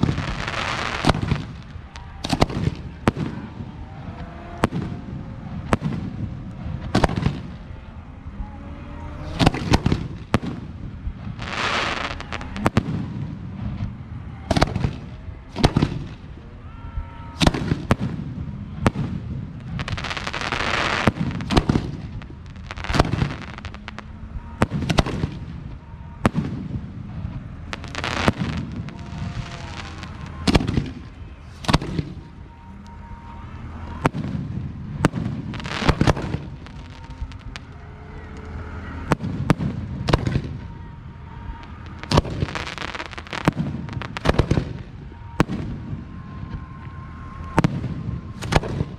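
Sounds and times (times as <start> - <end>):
fireworks hissing: 9.4 - 13.1, 27.6 - 32.4.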